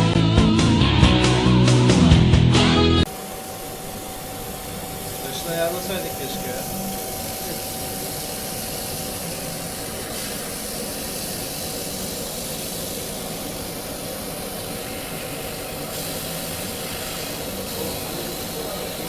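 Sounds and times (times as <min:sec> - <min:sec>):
machine hum: 0:00.0 - 0:19.0
even hiss: 0:05.0 - 0:19.0.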